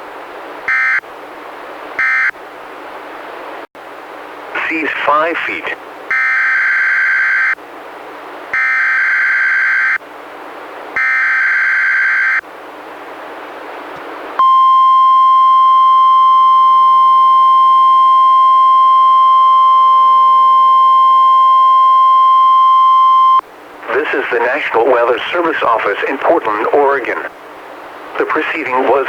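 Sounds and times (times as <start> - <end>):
loud steady warning alarm tone: 0.7 - 1.0, 2.0 - 2.4, 6.1 - 7.6, 8.5 - 10.0, 11.0 - 12.4, 14.4 - 23.4
radio hiss: 4.5 - 5.8, 23.8 - 27.4, 28.1 - 29.0.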